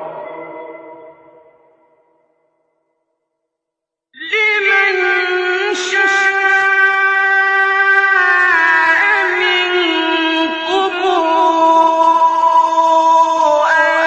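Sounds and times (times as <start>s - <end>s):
man reciting melodic chant: 4.2s - 14.0s.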